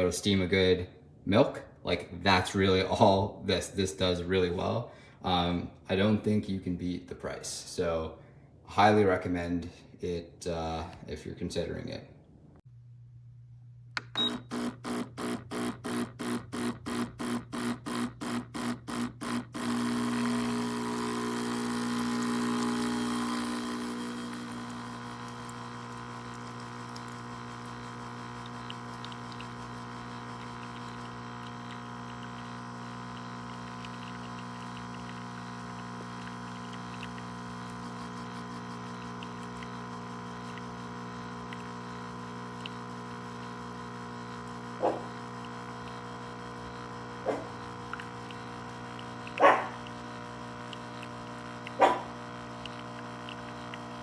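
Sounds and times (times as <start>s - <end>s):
espresso machine pump humming: 14.0s - 54.0s.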